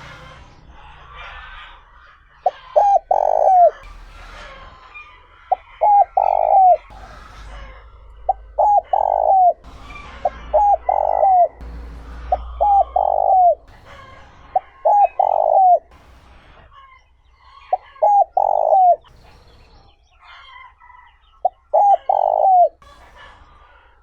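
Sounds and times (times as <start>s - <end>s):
dove cooing: 0.0s - 3.9s, 4.9s - 15.9s, 17.7s - 19.1s, 21.4s - 22.9s.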